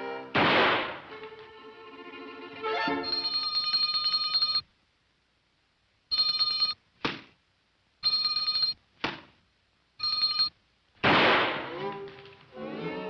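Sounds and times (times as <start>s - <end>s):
telephone bell ringing: 3.0s - 4.6s, 6.1s - 6.8s, 8.0s - 8.8s, 10.0s - 10.5s.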